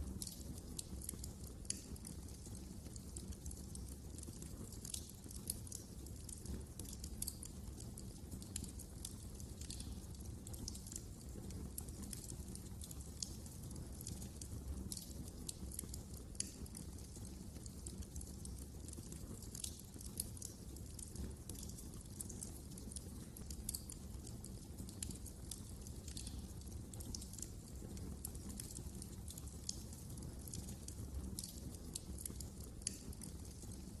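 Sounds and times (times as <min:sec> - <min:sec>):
wood fire crackling: 0:00.0 - 0:34.0.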